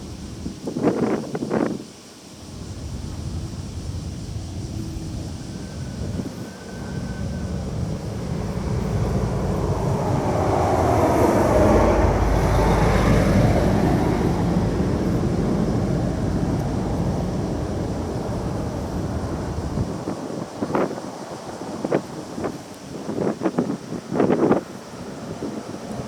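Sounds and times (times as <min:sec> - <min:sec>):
vehicle passing by: 0:02.5 - 0:20.0.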